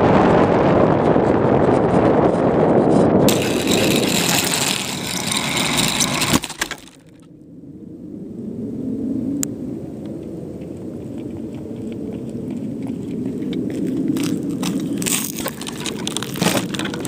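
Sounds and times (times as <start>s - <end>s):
rushing wind: 0.0s - 17.0s
model plane motor: 3.3s - 7.3s, 14.2s - 17.0s.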